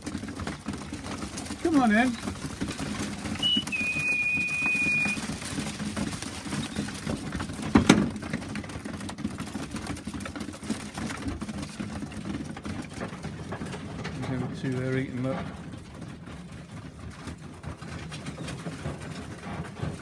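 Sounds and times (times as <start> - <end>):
rattling and shuffling in loft: 0.0 - 3.6, 4.2 - 20.0
high whistle: 3.4 - 5.2.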